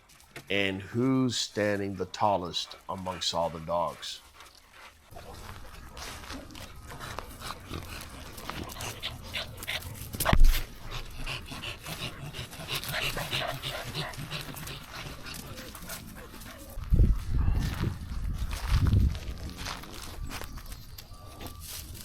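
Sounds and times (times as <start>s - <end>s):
dogs panting: 1.5s - 18.2s
puppies whimpering: 5.0s - 16.8s.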